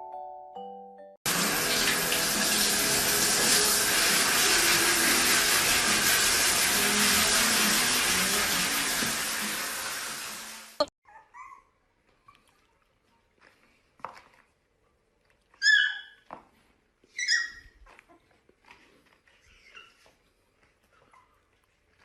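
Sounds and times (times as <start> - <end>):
loud hissing noise: 1.3 - 10.9
dog yelping: 11.0 - 11.8, 15.6 - 16.2, 17.2 - 17.8
dog whimpering: 11.0 - 12.4, 19.4 - 20.2.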